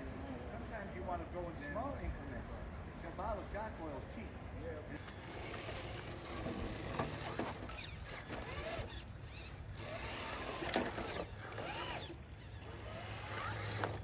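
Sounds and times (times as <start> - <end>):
rc car motor whining: 4.9 - 14.0.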